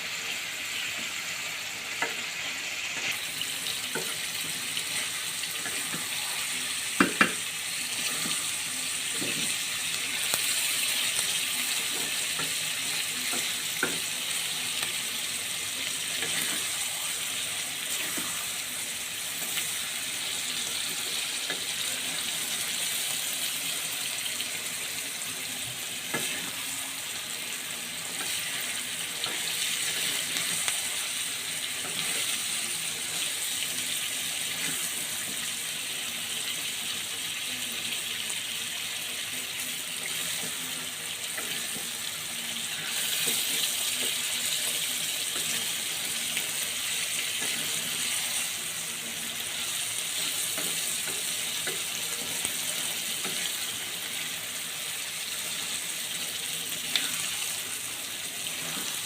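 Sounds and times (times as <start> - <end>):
food sizzling in a pan: 0.0 - 59.0
utensil knocking on pan: 7.0 - 7.4.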